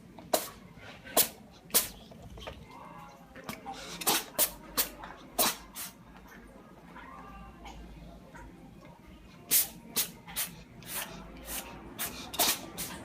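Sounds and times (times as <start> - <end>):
cat sneezing: 0.3 - 2.1, 3.8 - 6.0, 9.5 - 13.0.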